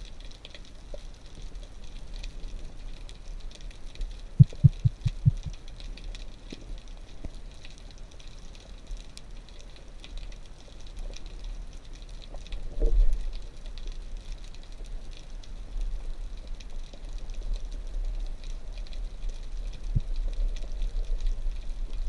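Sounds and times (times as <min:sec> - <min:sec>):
crackle of small clicks: 0:00.0 - 0:22.0
water gurgle: 0:00.0 - 0:22.0
underwater water rumble: 0:01.0 - 0:06.9, 0:10.8 - 0:22.0.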